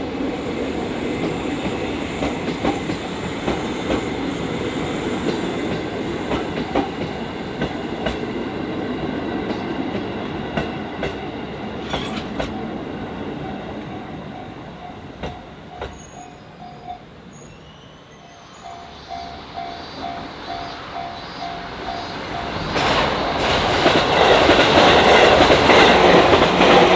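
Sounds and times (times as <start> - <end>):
train rumble: 0.0 - 17.4, 18.3 - 26.9
train wheels clicking over rail joints: 1.0 - 16.8, 19.2 - 26.9
crossing warning bell dinging: 11.8 - 17.3, 18.2 - 26.9.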